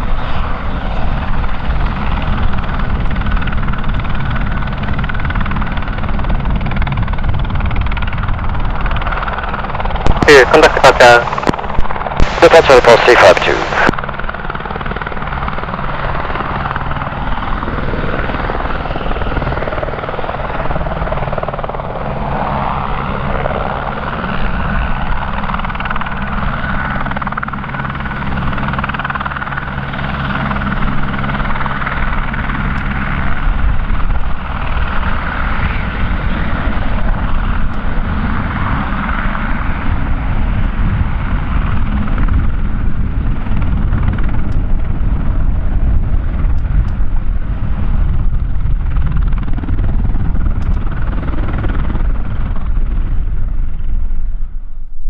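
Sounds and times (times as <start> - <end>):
helicopter engine whine: 0.0 - 55.0
steady low tones: 9.2 - 13.9.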